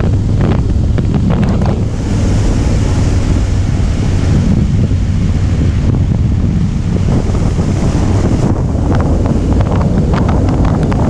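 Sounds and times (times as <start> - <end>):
motorcycle engine running: 0.0 - 11.0
wind buffeting microphone: 0.0 - 11.0.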